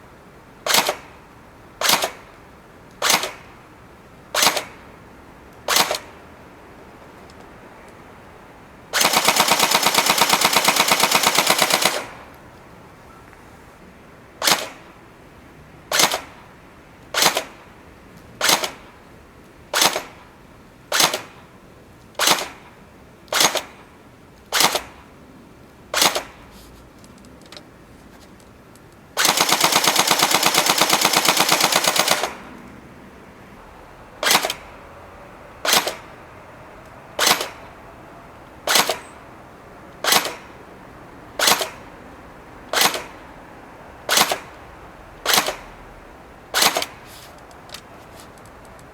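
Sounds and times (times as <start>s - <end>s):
airsoft shotgun firing: 0.7s - 1.1s, 1.8s - 2.2s, 3.0s - 3.5s, 4.4s - 4.8s, 14.4s - 14.8s, 15.9s - 16.3s, 17.2s - 17.6s, 19.8s - 20.2s, 20.9s - 21.3s, 22.2s - 22.6s, 26.0s - 26.4s, 29.2s - 32.6s, 34.2s - 34.6s, 37.2s - 37.6s, 38.7s - 39.0s, 40.0s - 40.5s, 41.4s - 41.8s, 42.7s - 43.2s, 44.1s - 44.5s, 45.2s - 45.7s, 46.6s - 47.0s.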